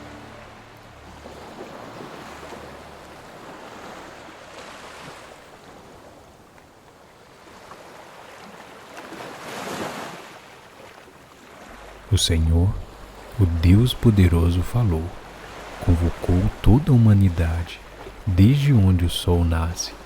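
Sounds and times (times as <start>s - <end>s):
ocean waves washing in: 0.0s - 20.0s
wave breaking: 11.4s - 20.0s.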